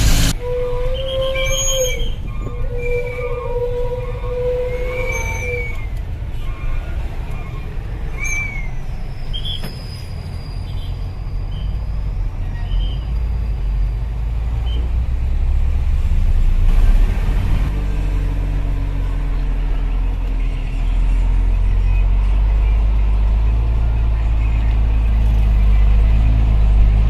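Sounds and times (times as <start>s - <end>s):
diesel truck engine rumbling: 0.0s - 27.0s
short high squeaks: 0.9s - 7.6s, 8.2s - 13.0s.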